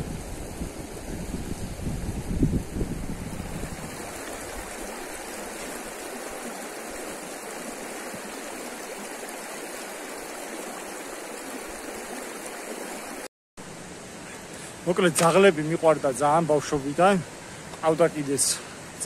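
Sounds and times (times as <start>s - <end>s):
wind buffeting microphone: 0.0s - 6.7s
river water rushing: 3.0s - 19.0s.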